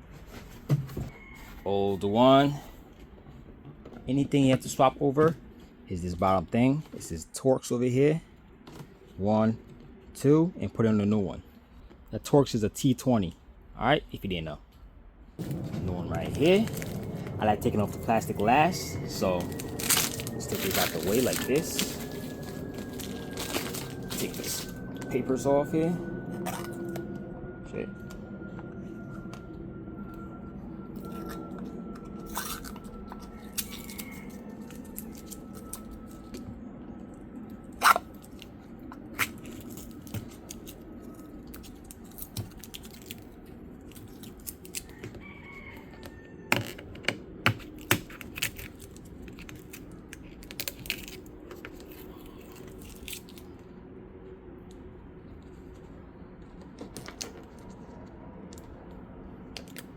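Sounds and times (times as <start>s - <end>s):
plastic film peeling off: 19.4s - 24.9s.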